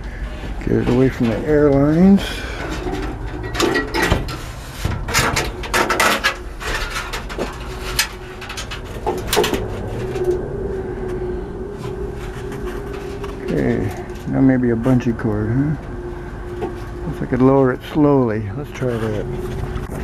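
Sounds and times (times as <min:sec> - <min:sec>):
metal clanks and rattles: 0:00.6 - 0:10.5
low steady tone: 0:05.2 - 0:20.0.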